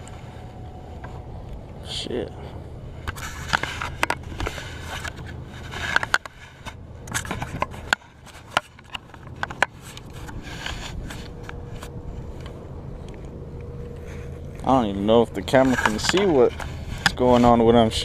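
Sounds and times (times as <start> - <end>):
steady low rumble: 0.0 - 18.0
handling clicks and scrapes: 3.0 - 17.6.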